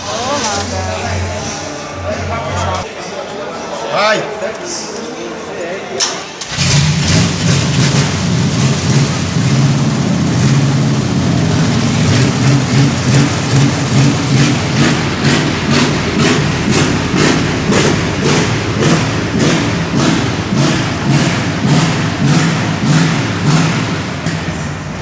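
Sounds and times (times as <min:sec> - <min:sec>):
engine deep rumble: 0:06.5 - 0:25.0.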